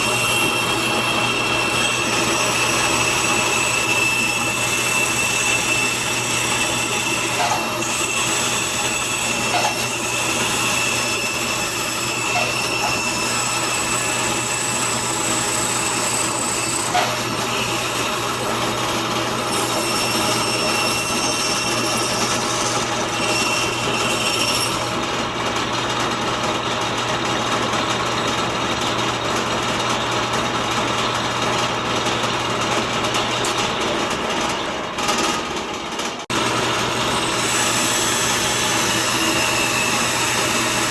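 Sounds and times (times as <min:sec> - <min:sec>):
band saw cutting wood: 0:00.0 - 0:26.2, 0:36.2 - 0:40.9.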